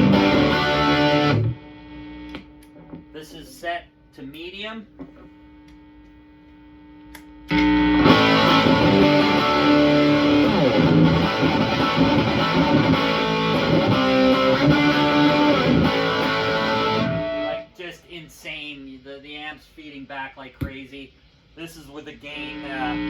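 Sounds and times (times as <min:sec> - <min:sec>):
overdriven electric guitar chords: 0:00.0 - 0:03.2, 0:07.1 - 0:17.8, 0:22.5 - 0:23.0.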